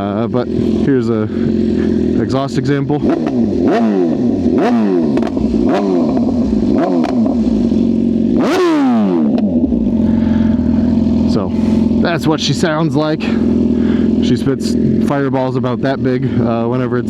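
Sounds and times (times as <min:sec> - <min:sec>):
motorcycle engine revving: 0:00.0 - 0:17.0.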